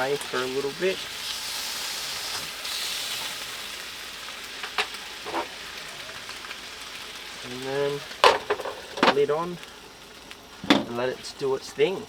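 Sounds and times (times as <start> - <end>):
chicken sizzling in a hot pan: 0.0 - 12.0
utensil knocking cookware: 8.2 - 9.2.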